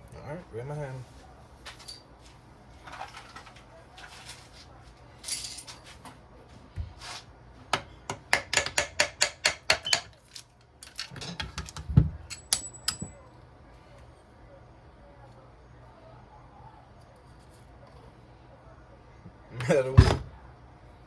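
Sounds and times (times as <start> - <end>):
metal tools clinking and scraping: 1.7 - 2.1, 5.2 - 6.1, 9.8 - 13.2.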